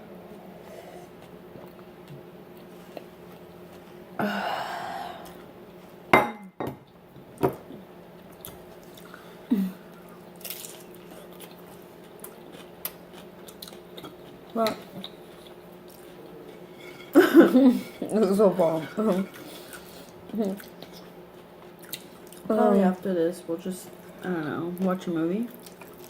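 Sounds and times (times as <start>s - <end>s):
chewing: 8.2s - 9.2s, 9.9s - 17.2s, 18.7s - 22.5s, 25.5s - 26.0s.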